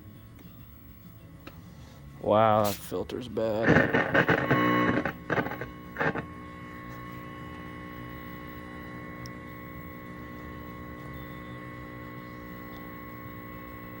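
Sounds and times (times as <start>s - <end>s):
television mains hum: 0.0s - 14.0s
steady high-pitched tones: 3.6s - 14.0s.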